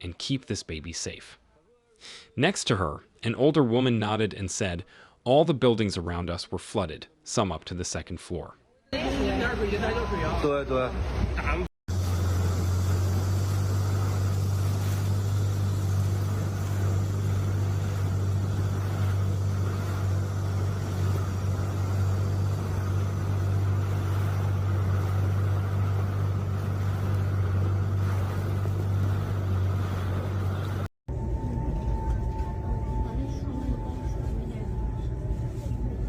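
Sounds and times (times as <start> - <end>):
engine droning steadily: 9.0 - 36.0.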